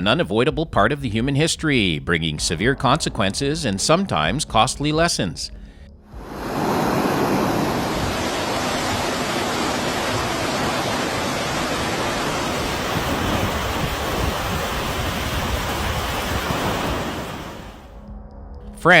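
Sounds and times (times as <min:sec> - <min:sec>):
turbulent water rushing: 0:06.2 - 0:17.9.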